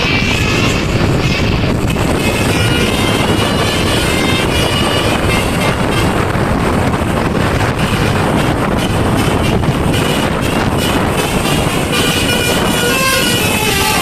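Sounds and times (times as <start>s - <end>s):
heavy road traffic: 0.0s - 14.0s
wind buffeting microphone: 0.0s - 14.0s.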